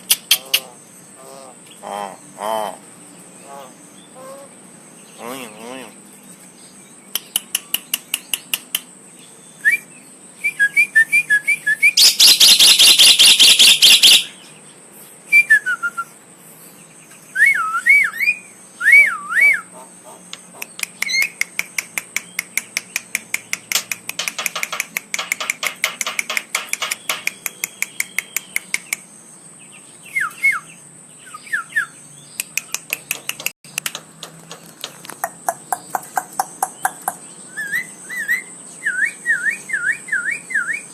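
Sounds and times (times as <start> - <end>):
bird rapid sharp clicks: 0.0 - 0.7, 7.1 - 8.9, 20.3 - 29.1, 32.3 - 37.2
bird wavy whistles: 9.5 - 14.4, 17.3 - 19.8, 30.1 - 32.0, 36.6 - 40.9.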